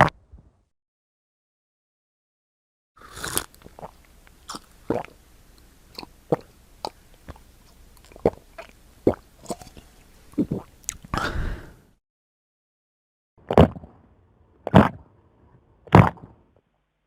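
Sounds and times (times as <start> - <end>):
person gulping water: 3.0 - 5.2, 5.9 - 11.6.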